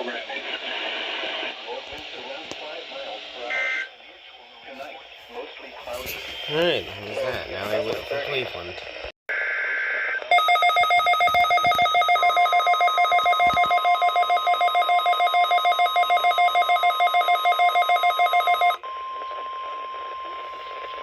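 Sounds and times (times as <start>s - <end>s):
weather radio alarm beeps: 10.3s - 21.0s.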